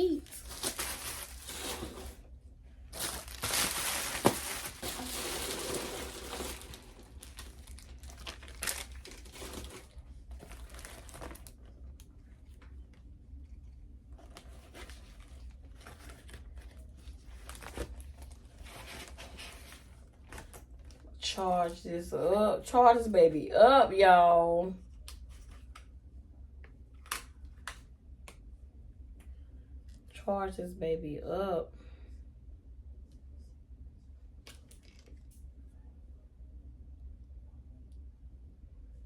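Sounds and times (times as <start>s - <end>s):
packaging crinkling and rustling: 0.0s - 2.3s, 2.9s - 12.8s, 14.2s - 21.1s, 34.5s - 35.4s.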